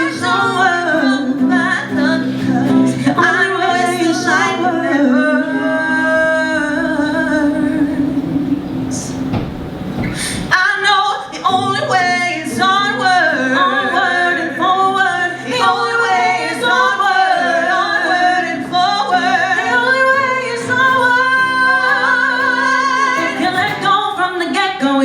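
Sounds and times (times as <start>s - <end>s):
person singing: 0.0s - 9.3s, 10.2s - 25.0s
held musical chords: 6.4s - 10.1s.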